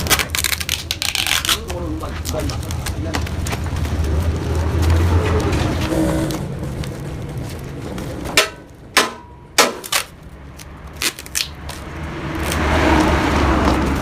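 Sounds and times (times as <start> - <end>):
sharp ringing knocks: 8.4 - 9.9.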